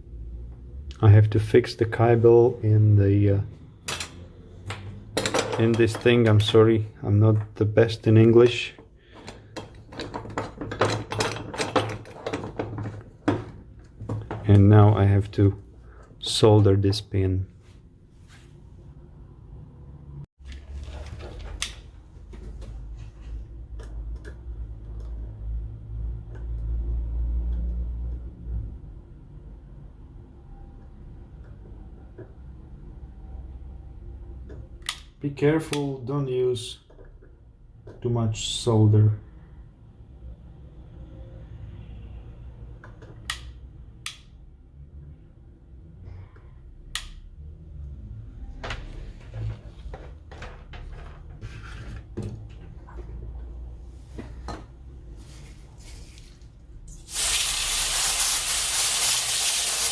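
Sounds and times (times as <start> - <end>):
clicks of soldering tools: 34.5 - 35.1, 46.9 - 47.2
sharp clicks of tools: 34.8 - 35.1, 43.2 - 44.3, 46.9 - 47.2.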